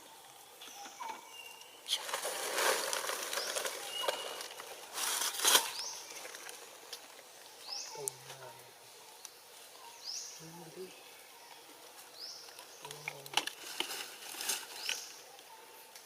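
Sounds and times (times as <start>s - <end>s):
rustling: 0.7s - 9.8s, 11.6s - 15.4s
animals squeaking and chirping: 3.3s - 4.8s.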